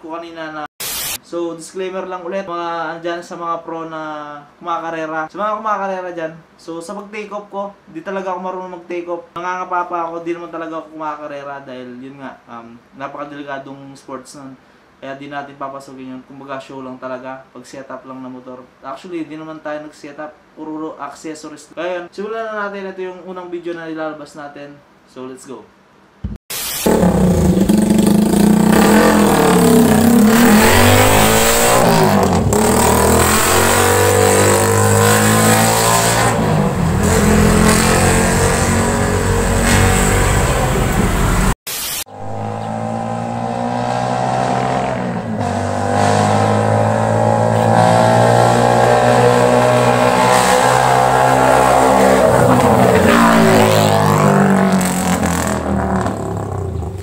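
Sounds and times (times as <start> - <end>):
motorcycle engine revving: 26.8 - 57.0.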